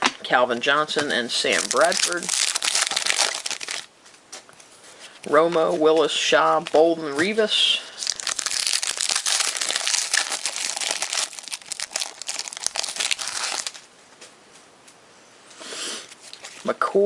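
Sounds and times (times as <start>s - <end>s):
foil wrapper crinkling: 0.8s - 3.9s, 8.0s - 13.9s, 16.1s - 16.7s.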